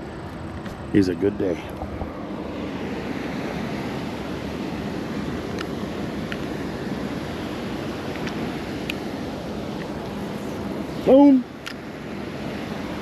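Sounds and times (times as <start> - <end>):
water rushing over spillway: 2.0 - 13.0.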